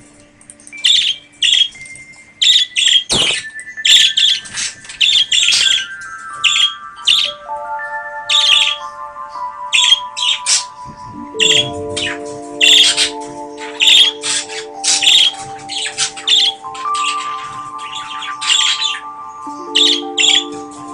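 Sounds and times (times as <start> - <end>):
held musical notes: 0.0 - 20.9
budgerigar chirping: 0.8 - 1.8, 2.4 - 7.4, 8.3 - 20.6.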